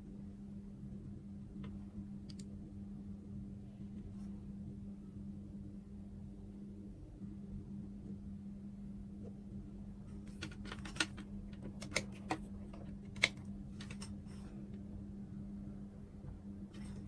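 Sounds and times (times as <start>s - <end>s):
steady low hum: 0.0s - 17.0s
probes and plug clicking: 10.4s - 14.1s.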